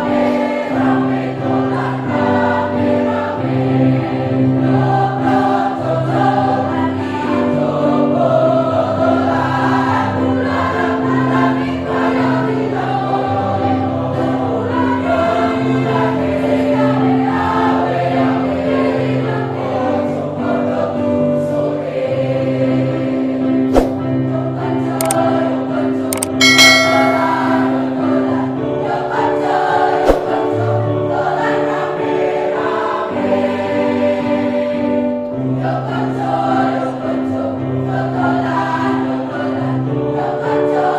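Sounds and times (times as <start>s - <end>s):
choir singing in harmony: 0.0s - 40.9s
sharp clicks: 26.2s - 27.0s.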